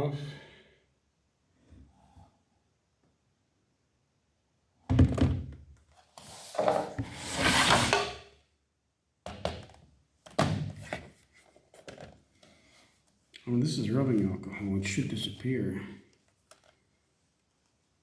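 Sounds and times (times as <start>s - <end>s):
rustling and scraping: 6.0s - 8.2s.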